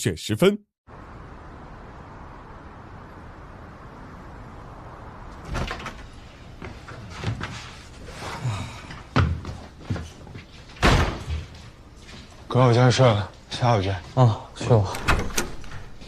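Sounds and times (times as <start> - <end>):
door handling knocks and rustles: 9.1 - 11.6, 14.8 - 16.0.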